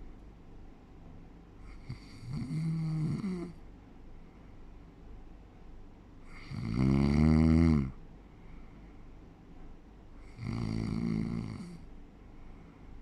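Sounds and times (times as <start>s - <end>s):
quiet breathing: 1.6s - 5.0s, 7.7s - 9.4s, 10.1s - 13.0s
person snoring: 1.7s - 3.6s, 6.3s - 8.0s, 10.3s - 11.8s.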